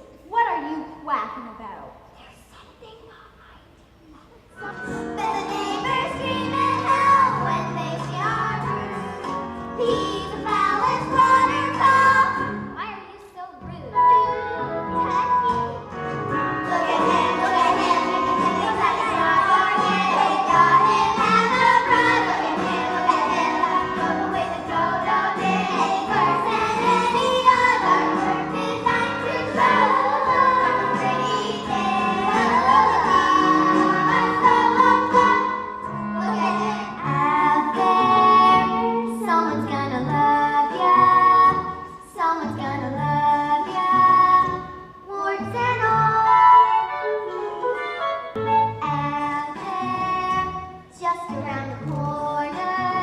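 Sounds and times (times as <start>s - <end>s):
children singing: 4.6s - 9.2s, 9.8s - 12.5s, 16.5s - 41.7s
instrumental accompaniment: 13.7s - 41.8s, 45.6s - 53.0s.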